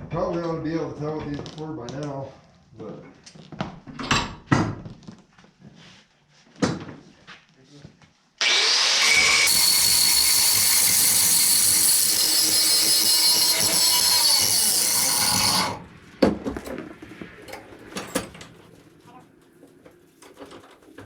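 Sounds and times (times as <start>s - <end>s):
angle grinder cutting steel: 8.4s - 16.0s.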